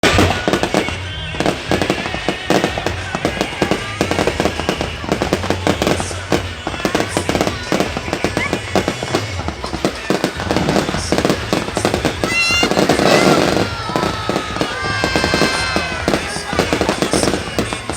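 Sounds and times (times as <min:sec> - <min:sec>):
fireworks bangs and crackles: 0:00.0 - 0:17.9.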